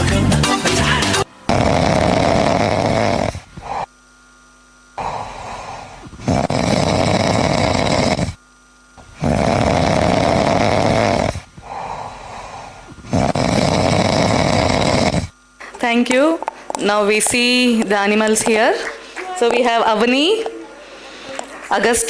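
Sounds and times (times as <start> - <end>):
loud snoring: 0.8 - 3.9, 5.0 - 8.4, 9.0 - 15.4
soft breathing: 5.0 - 8.4, 9.0 - 15.4, 16.4 - 17.9, 20.2 - 21.8.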